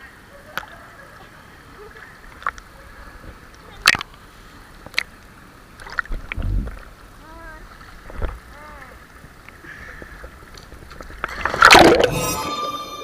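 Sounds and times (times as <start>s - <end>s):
faint steady hum: 0.0s - 13.0s
pool water splashing: 0.1s - 9.6s.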